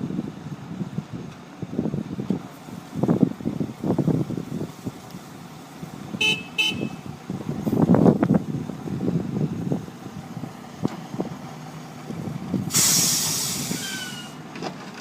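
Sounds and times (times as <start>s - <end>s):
heavy machine rumbling: 0.0s - 15.0s
loud hiss of released air: 12.6s - 14.4s.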